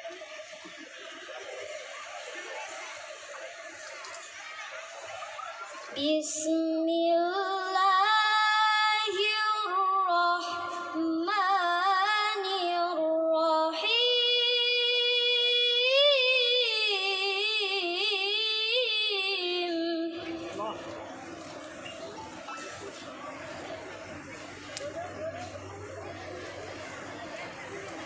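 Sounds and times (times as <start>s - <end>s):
girl reciting melodically: 5.9s - 20.5s.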